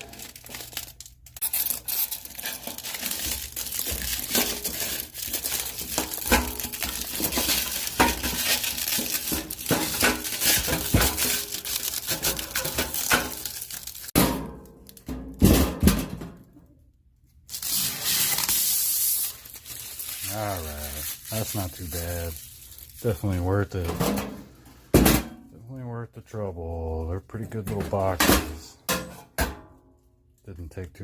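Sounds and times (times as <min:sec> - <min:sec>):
plastic film crinkling and tearing: 0:00.0 - 0:14.2, 0:17.4 - 0:23.8.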